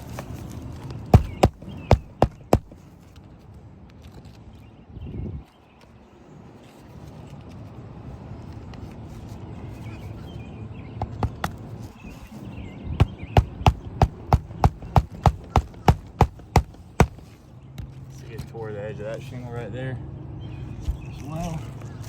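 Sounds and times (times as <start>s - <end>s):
hammer striking roofing nails: 1.1s - 2.8s, 13.0s - 17.3s.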